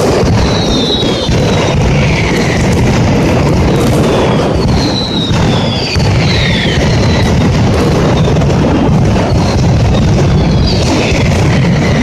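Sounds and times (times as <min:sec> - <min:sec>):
firecracker barrage: 0:00.0 - 0:12.0
falling whistles: 0:00.4 - 0:02.6, 0:04.0 - 0:07.4, 0:09.2 - 0:12.0.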